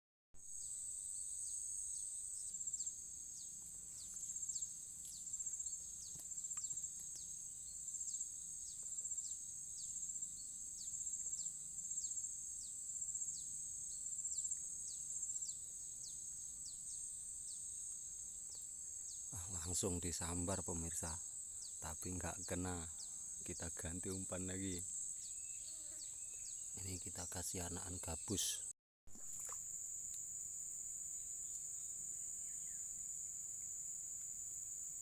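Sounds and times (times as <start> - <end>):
insects buzzing shrilly: 0.4 - 35.0
short falling insect chirps: 29.1 - 34.5.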